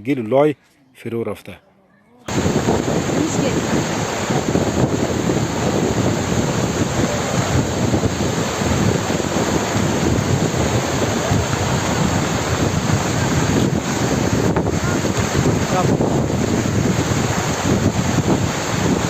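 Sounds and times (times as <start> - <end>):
floodwater rushing: 2.3 - 19.0
wind gusting on microphone: 2.3 - 19.0.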